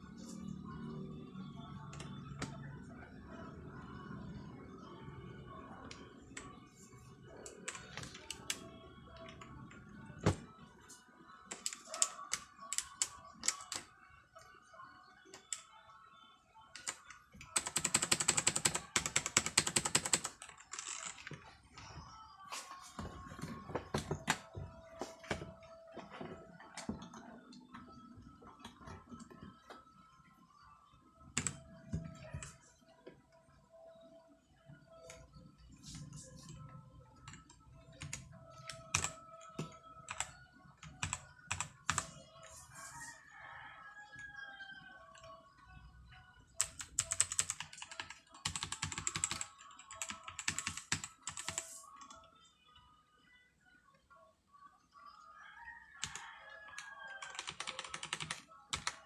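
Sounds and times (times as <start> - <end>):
mechanical keyboard typing: 16.8 - 21.2, 38.0 - 42.2, 46.6 - 52.1, 57.2 - 59.0
mechanical keyboard clacking: 46.6 - 51.6, 57.2 - 59.0.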